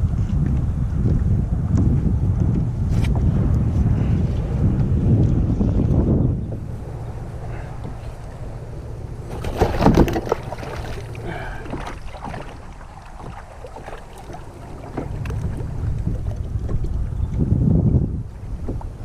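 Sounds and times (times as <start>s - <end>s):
wind rumbling on microphone: 0.0s - 19.0s.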